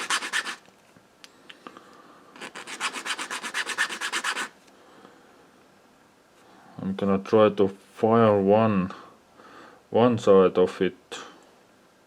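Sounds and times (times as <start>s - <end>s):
hand file scraping metal: 0.0s - 0.6s, 2.4s - 4.5s.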